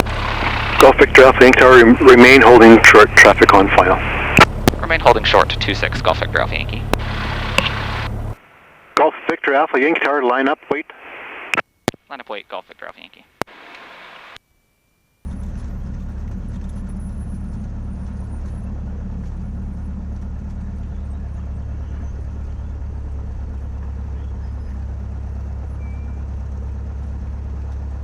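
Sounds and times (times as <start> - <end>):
propeller plane engine droning: 0.0 - 8.5, 15.2 - 28.0.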